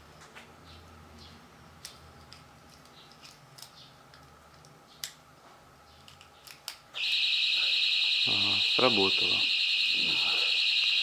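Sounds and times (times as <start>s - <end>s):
small objects clicking and rustling: 1.8s - 5.2s, 5.9s - 6.9s.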